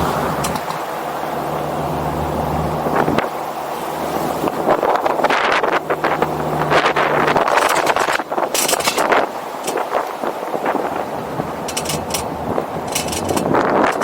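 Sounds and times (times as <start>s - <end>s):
vehicle engine humming: 0.0s - 14.0s
wind buffeting microphone: 0.0s - 14.0s.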